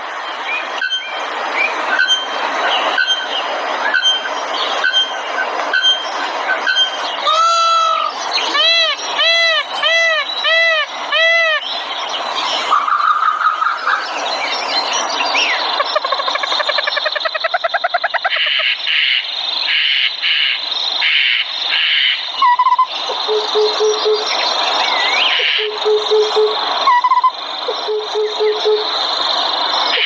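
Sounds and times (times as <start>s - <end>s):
songbirds singing: 0.0s - 30.0s
thin steady high tone: 22.4s - 24.4s, 25.6s - 29.2s.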